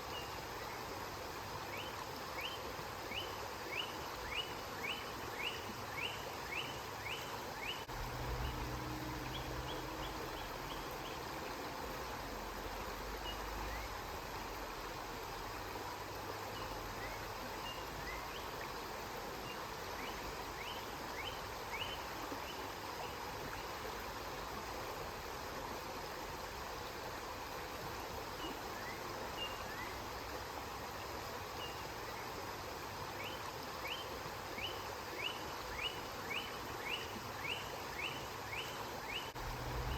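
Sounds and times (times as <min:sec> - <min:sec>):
river water flowing: 0:00.0 - 0:39.9
bird chirping: 0:04.3 - 0:11.3
low rumble: 0:07.9 - 0:10.9, 0:39.4 - 0:39.9.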